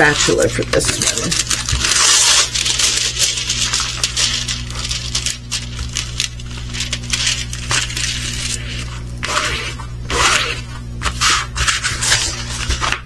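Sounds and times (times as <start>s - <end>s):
plastic packaging crinkling: 0.0s - 10.4s
low steady hum: 0.0s - 13.0s.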